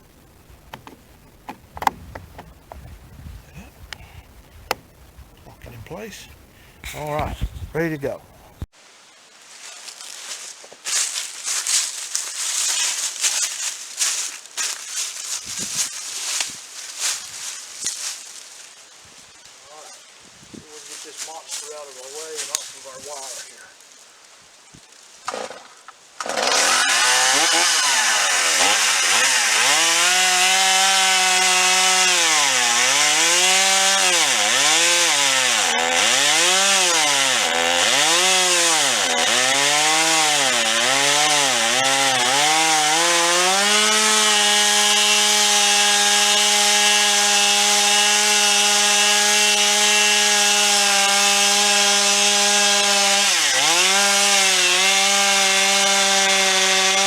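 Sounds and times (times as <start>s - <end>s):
chainsaw cutting wood: 1.5s - 2.8s, 25.2s - 57.0s.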